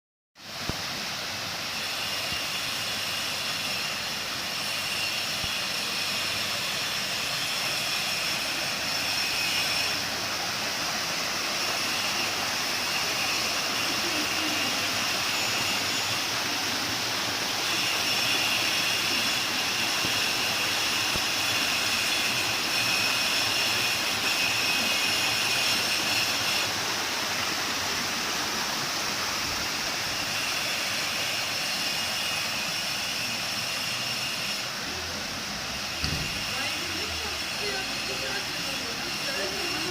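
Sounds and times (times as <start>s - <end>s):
water pouring over waterfall: 0.4s - 39.9s.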